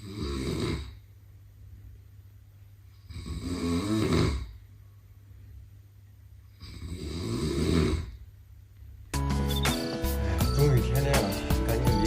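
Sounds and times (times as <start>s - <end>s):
person snoring: 0.0s - 1.0s, 3.0s - 4.6s, 6.6s - 8.2s, 9.6s - 10.6s.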